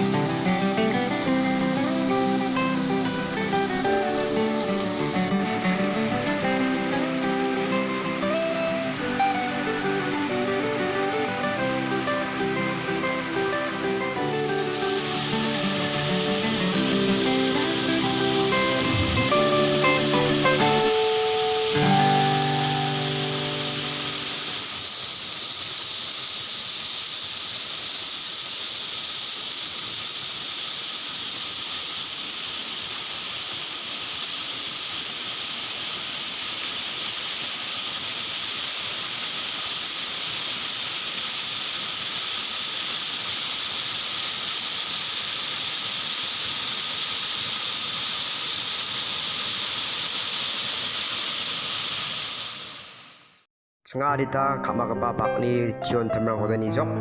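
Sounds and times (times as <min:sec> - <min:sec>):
high even whine: 0:00.0 - 0:25.0
waterfall rushing: 0:00.0 - 0:53.4.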